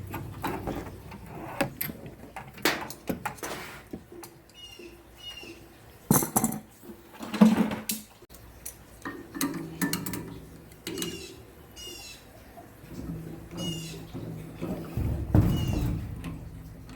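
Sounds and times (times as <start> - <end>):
metal tools clinking and knocking: 6.1 - 6.7.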